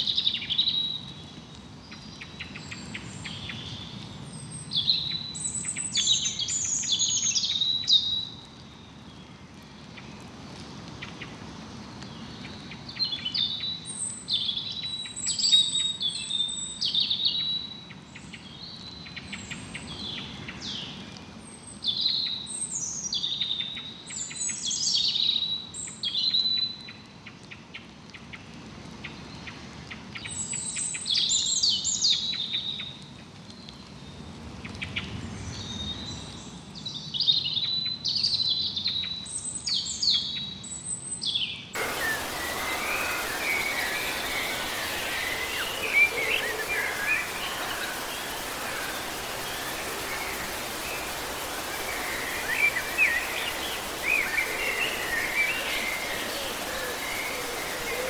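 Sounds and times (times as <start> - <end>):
faint steady background hiss: 41.8 - 58.0
songbirds chirping and whistling: 41.8 - 58.0.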